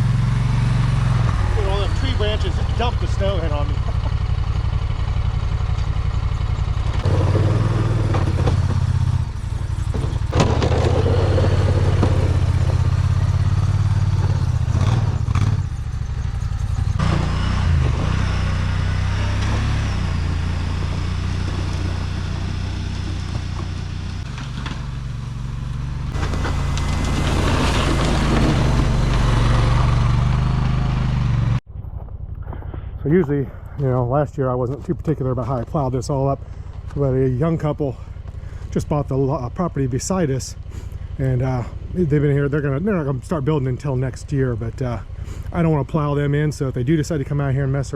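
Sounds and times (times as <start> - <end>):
snowplow engine droning: 0.0 - 47.9
clunks: 3.8 - 18.2, 19.2 - 39.2.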